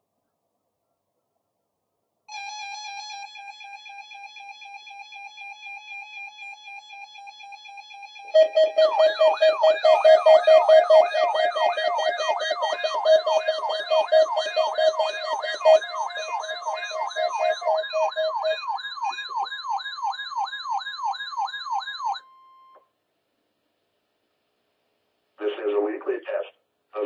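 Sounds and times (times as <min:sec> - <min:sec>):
electronic siren falling sweeps: 0:02.3 - 0:22.2
steady high tone: 0:02.3 - 0:22.2
pulsing low tone: 0:08.4 - 0:19.6.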